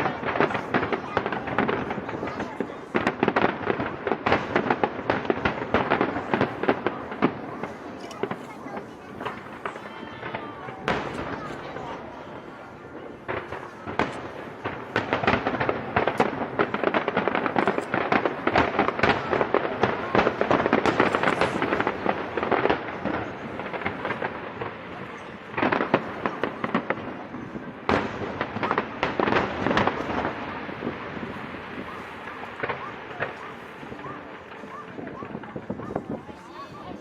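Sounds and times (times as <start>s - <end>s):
fireworks bangs and crackling: 0.0s - 37.0s.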